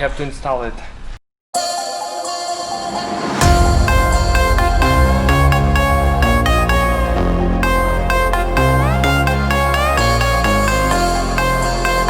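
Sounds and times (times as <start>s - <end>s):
electronic music: 1.6s - 12.0s
heavy bass beat: 3.1s - 12.0s.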